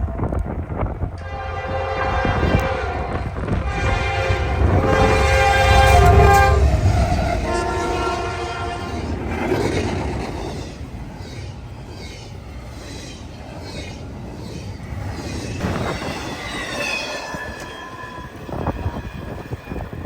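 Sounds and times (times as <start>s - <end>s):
locomotive rumble: 0.0s - 20.0s
train rattling past: 0.0s - 20.0s
locomotive air horn blasts: 1.2s - 9.1s.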